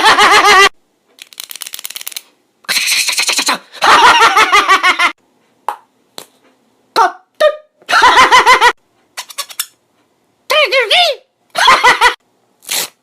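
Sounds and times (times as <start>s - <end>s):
man making mouth clicks: 2.6s - 3.6s
wavering voiced mouth sound: 2.7s - 3.7s.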